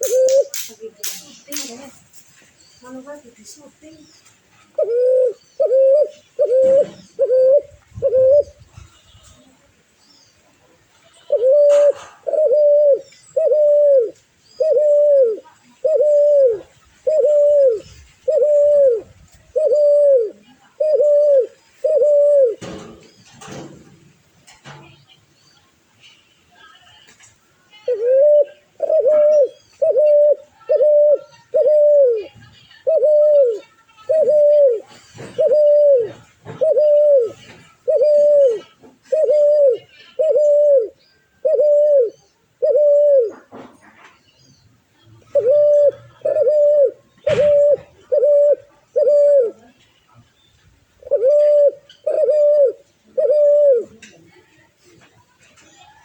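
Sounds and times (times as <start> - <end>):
bird hooting: 4.8 - 8.6, 11.3 - 22.6, 27.9 - 34.8, 35.4 - 43.3, 45.3 - 49.6, 51.0 - 53.9.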